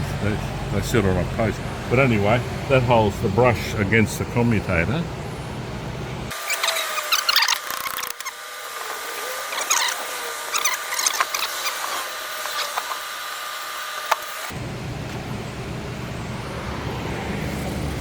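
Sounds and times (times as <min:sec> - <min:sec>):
metal parts clicking and scraping: 0:06.3 - 0:13.1.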